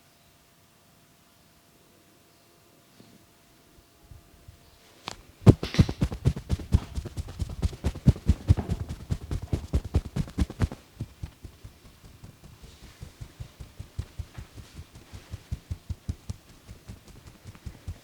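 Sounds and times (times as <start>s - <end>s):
hands slapping in massage: 5.5s - 18.0s.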